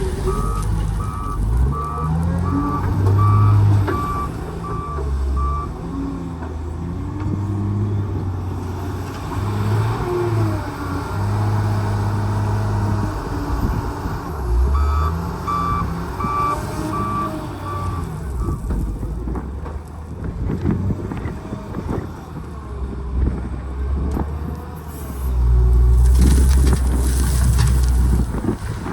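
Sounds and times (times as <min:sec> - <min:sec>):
diesel engine running: 0:00.0 - 0:28.9
reversing alarm beeping: 0:00.2 - 0:05.7, 0:14.7 - 0:18.6.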